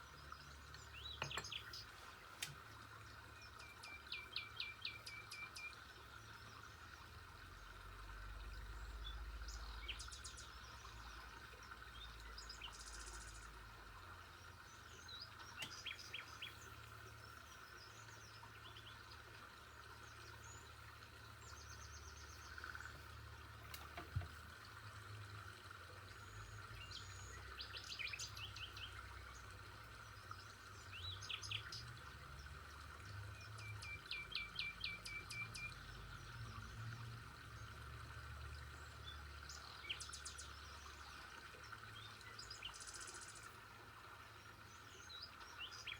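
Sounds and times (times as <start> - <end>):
faint steady hum: 0.0 - 45.9
birds chirping and trilling: 0.2 - 2.3, 14.4 - 19.2, 30.3 - 37.8.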